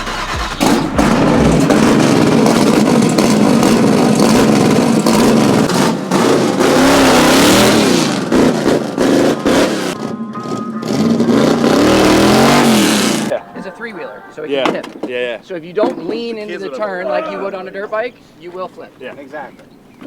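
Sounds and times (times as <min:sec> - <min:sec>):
vehicle engine revving: 0:00.0 - 0:13.4.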